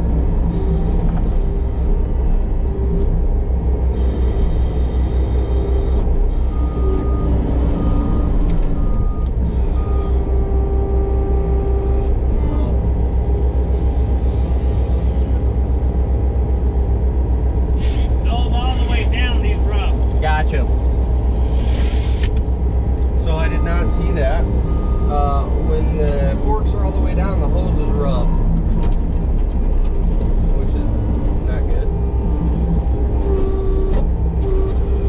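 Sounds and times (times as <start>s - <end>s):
diesel engine running: 0.0s - 35.0s
thin whines: 21.4s - 22.4s.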